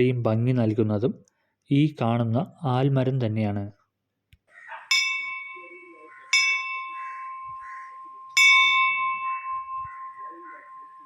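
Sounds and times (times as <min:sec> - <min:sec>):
bell ringing: 0:04.9 - 0:11.0.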